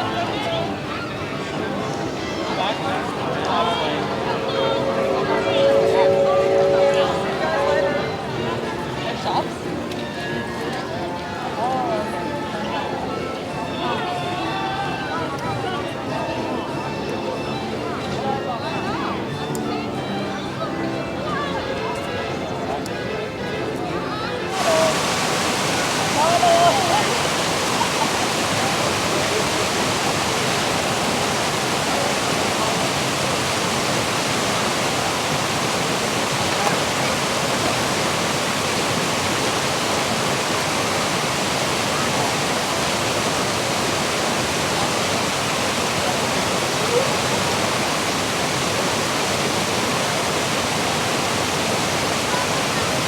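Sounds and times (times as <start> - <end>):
falling water rushing: 0.0 - 8.6, 24.5 - 53.0
faint distant crowd voices: 0.0 - 53.0.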